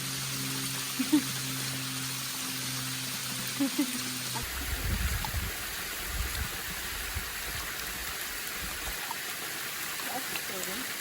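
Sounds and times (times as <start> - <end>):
low rumble: 4.4 - 7.6.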